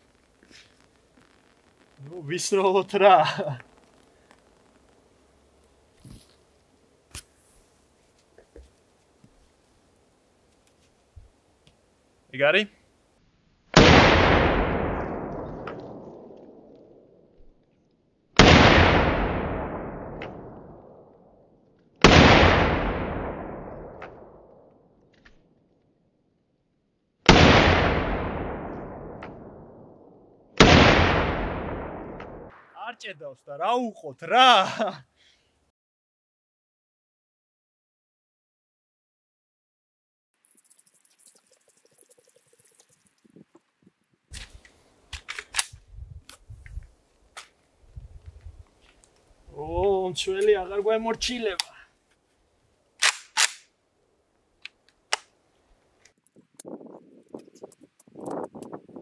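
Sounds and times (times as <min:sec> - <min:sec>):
rifle shots with echo: 0:13.8 - 0:16.7, 0:18.4 - 0:21.0, 0:22.0 - 0:24.5, 0:27.3 - 0:32.6
rifle metallic clicks and knocks: 0:44.3 - 0:46.4.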